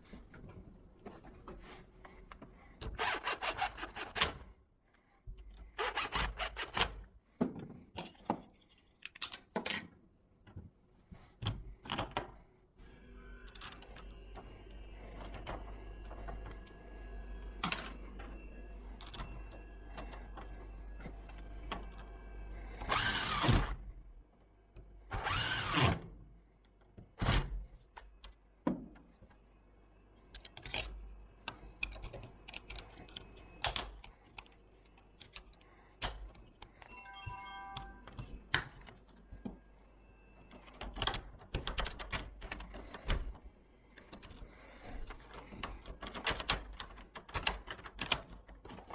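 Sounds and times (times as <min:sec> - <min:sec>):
power drill running: 0:03.0 - 0:04.2, 0:22.9 - 0:23.7, 0:25.2 - 0:25.9.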